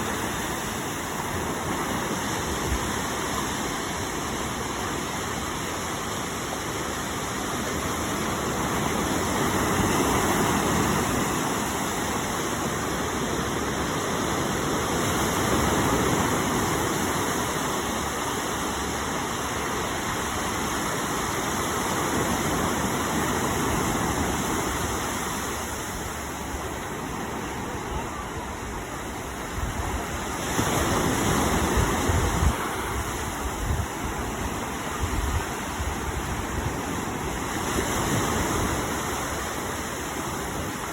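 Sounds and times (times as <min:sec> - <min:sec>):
waves rushing: 0:00.0 - 0:40.9
wind: 0:00.0 - 0:40.9
wind buffeting microphone: 0:22.0 - 0:39.2.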